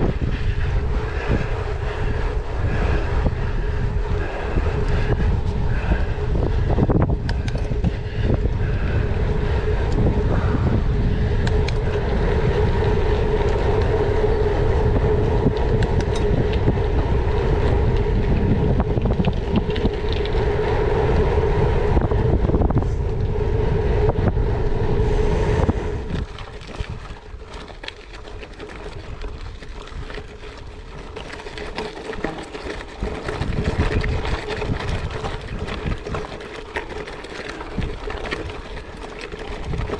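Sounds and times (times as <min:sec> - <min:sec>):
steady hum: 0:00.0 - 0:27.5
wind rushing over microphone: 0:00.0 - 0:39.9.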